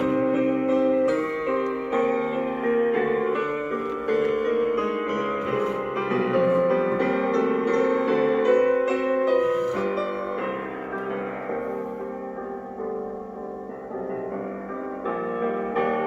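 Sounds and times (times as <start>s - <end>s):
gentle piano melody: 0.0s - 16.0s.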